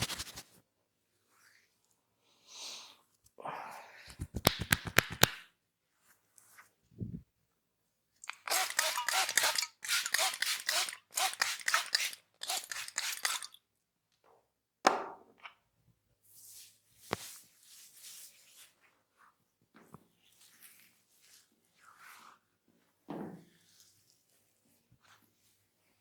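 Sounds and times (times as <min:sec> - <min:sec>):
hands rubbing scalp: 0:00.0 - 0:00.4, 0:04.1 - 0:05.4, 0:08.5 - 0:13.5
sharp cracks: 0:04.1 - 0:05.4.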